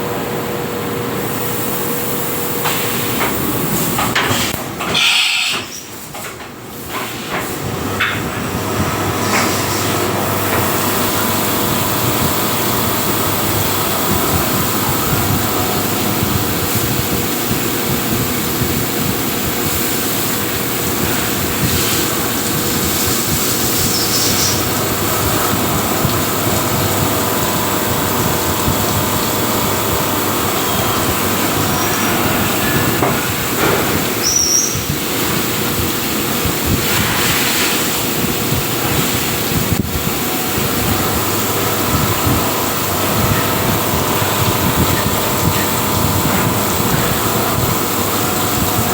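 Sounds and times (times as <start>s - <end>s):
machine running with hum: 7.6s - 48.9s
brief high squeal: 34.2s - 34.9s.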